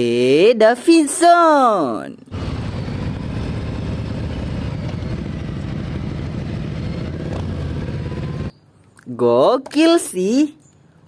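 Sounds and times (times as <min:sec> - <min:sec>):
motorcycle engine idling: 0:02.4 - 0:08.5.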